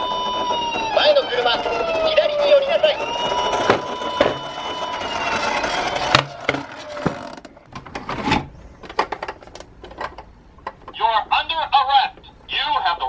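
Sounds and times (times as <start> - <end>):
toy car rattling down a slope: 0.0 - 7.1.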